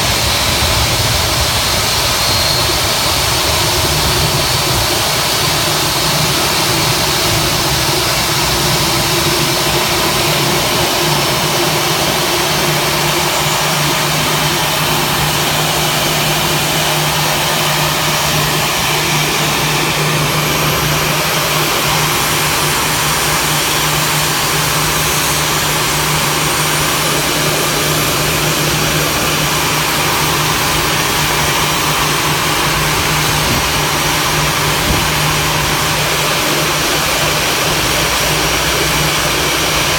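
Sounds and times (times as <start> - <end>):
faint high whine: 0.0 - 39.8
jet engines rumbling: 0.0 - 39.9.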